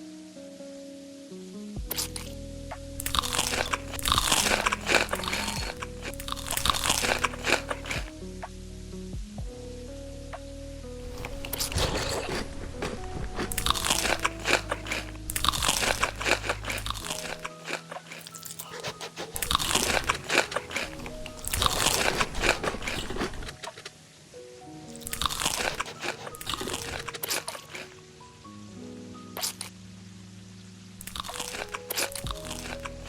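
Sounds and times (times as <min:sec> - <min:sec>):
background music: 0:00.0 - 0:33.0
crunching crisp food: 0:03.0 - 0:08.0, 0:11.2 - 0:23.8, 0:25.0 - 0:28.0, 0:31.0 - 0:33.0.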